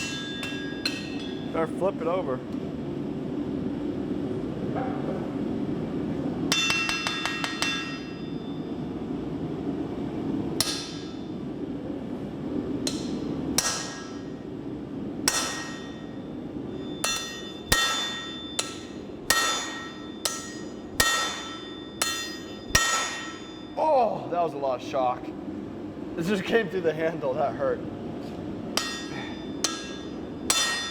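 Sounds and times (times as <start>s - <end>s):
hammer blows on steel anvil: 17.0s - 23.7s, 28.8s - 30.9s.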